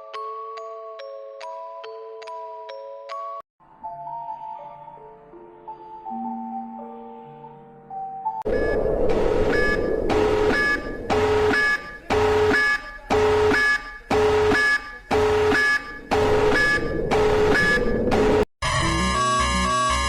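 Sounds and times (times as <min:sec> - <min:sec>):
pulsing electronic alarm: 0:08.5 - 0:20.0.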